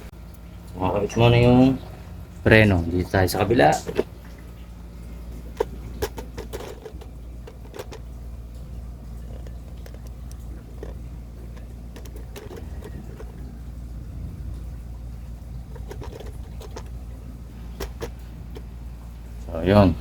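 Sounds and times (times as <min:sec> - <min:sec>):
steady low hum: 0:00.0 - 0:20.0
clicks and taps of metal parts: 0:05.5 - 0:08.0, 0:09.3 - 0:13.4, 0:15.7 - 0:16.9, 0:17.7 - 0:18.7.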